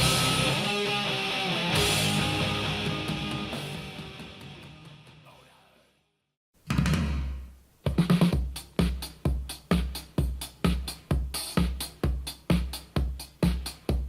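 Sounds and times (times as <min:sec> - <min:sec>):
heavy kick drum: 0:06.7 - 0:14.0.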